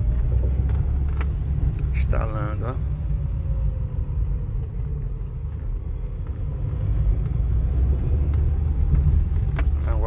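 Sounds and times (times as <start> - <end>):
car engine rumble: 0.0 - 10.0
road noise inside car: 0.0 - 10.0.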